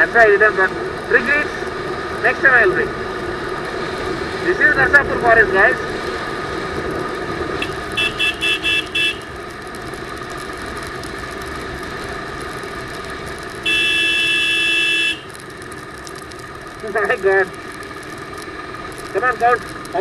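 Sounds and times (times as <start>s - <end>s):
motorcycle engine running: 0.0s - 20.0s
vehicle horn tooting: 7.6s - 9.3s, 13.6s - 15.3s.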